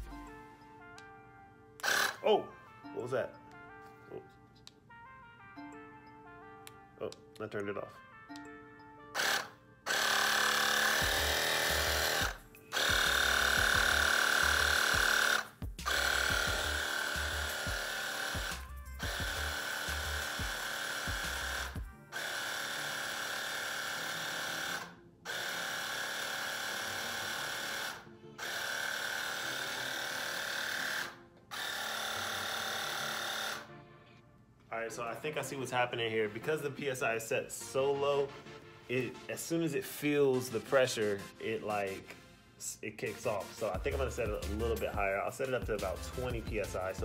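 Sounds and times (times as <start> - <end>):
portable air compressor pumping: 1.8 - 2.2, 9.2 - 33.7.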